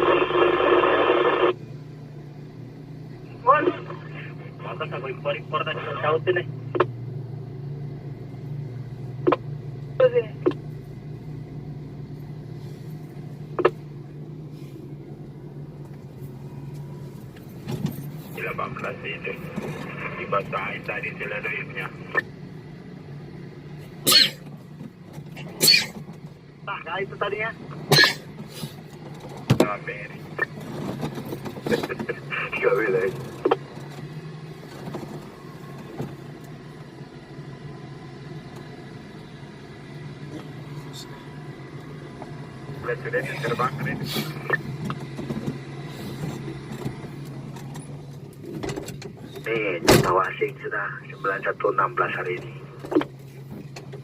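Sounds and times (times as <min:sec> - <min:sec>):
diesel truck engine running: 0:00.0 - 0:54.0.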